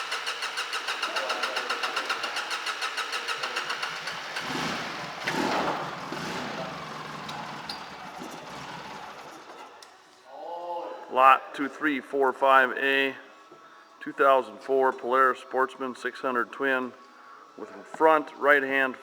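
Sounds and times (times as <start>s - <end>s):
engine cranking with electric starter: 0.0s - 9.7s
engine running: 0.0s - 9.7s.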